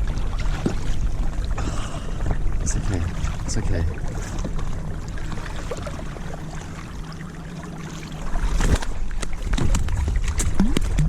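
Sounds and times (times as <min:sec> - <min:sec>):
water sloshing against boat: 0:00.0 - 0:11.0
wind rumble on microphone: 0:08.3 - 0:11.0.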